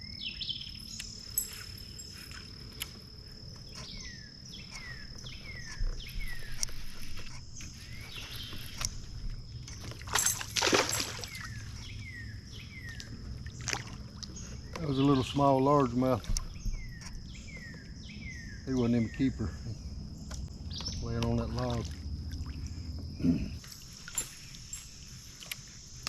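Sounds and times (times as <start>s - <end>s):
high insect trill: 0.0s - 26.0s
water splash: 9.9s - 11.6s, 13.5s - 14.3s.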